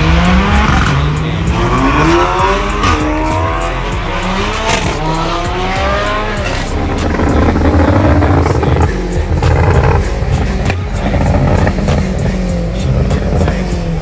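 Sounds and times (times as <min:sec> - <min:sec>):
car engine revving hard: 0:00.0 - 0:14.0
exhaust pops: 0:06.5 - 0:12.3.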